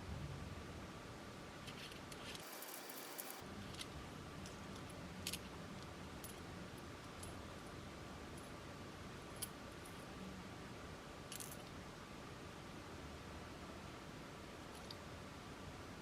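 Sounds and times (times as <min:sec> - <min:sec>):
low hiss: 0:00.0 - 0:16.0.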